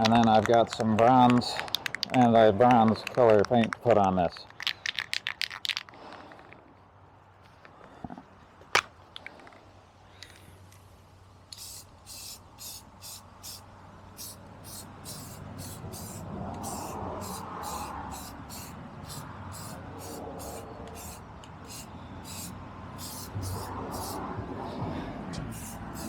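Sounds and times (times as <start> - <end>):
aerosol spray can bursts: 11.6 - 13.6, 14.2 - 24.2, 25.4 - 26.0.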